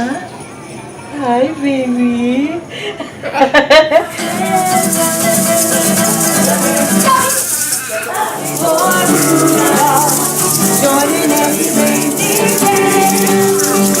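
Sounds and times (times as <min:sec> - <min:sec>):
plucked string music: 0:04.1 - 0:14.0
shaker rhythm: 0:04.1 - 0:14.0.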